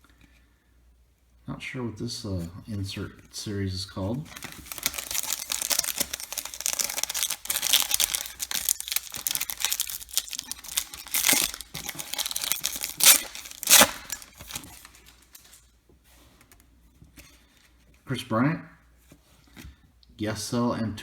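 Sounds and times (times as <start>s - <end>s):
plastic wrapper tearing and crinkling: 4.2s - 15.6s.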